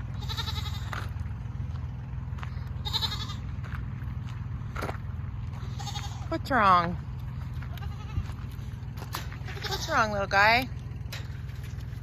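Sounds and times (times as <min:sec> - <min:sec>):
goat bleating: 0:00.0 - 0:01.2, 0:02.6 - 0:03.7, 0:05.5 - 0:10.6.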